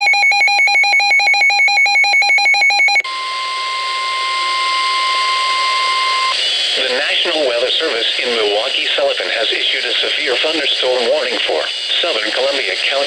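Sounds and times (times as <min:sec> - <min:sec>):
rapid alarm beeps: 0:00.0 - 0:03.0, 0:03.7 - 0:06.4
steady warning alarm tone: 0:00.0 - 0:07.2
radio hiss: 0:06.4 - 0:13.0.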